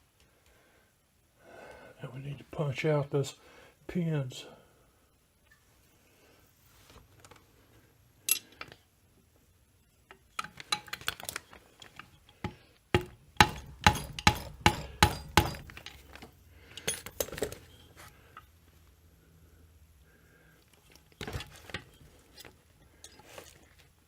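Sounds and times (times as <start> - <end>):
hammer tapping metal punch: 12.4 - 16.0.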